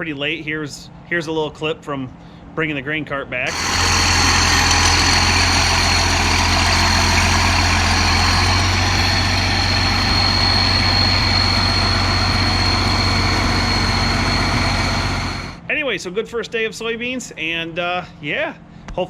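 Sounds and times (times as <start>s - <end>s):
thin high whine: 3.5s - 15.6s
tractor engine droning: 3.5s - 15.6s.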